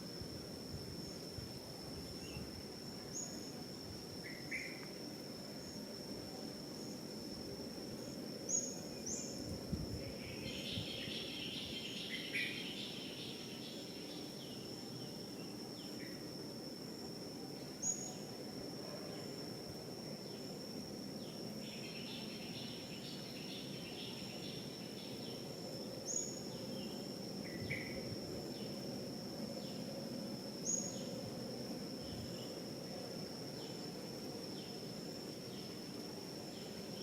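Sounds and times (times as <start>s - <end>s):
high-pitched insect drone: 20.1s - 37.0s.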